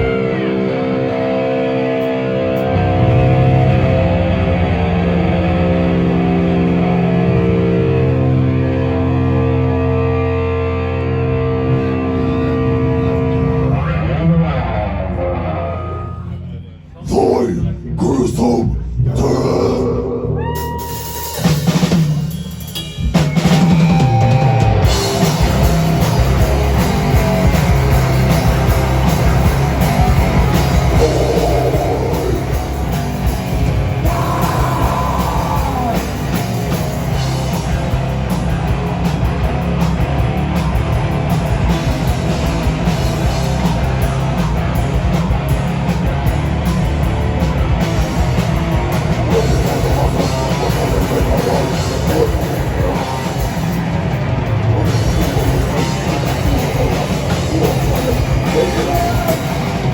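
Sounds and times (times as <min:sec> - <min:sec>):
live rock band playing: 0:00.0 - 0:16.2, 0:20.5 - 0:59.9
person singing: 0:17.1 - 0:21.2, 0:30.9 - 0:32.7, 0:34.0 - 0:36.2, 0:54.8 - 0:59.9.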